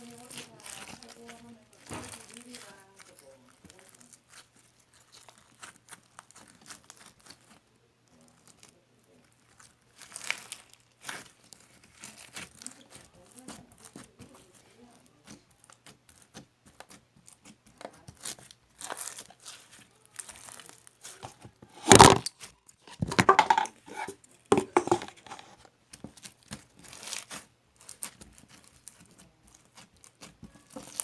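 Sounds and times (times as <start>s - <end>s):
crinkling and rustling: 0.0s - 31.0s.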